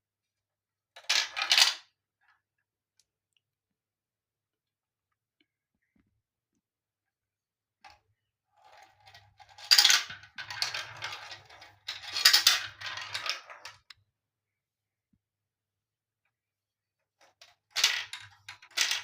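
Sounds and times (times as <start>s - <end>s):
marbles rattling down a track: 8.6s - 13.9s, 17.7s - 19.0s.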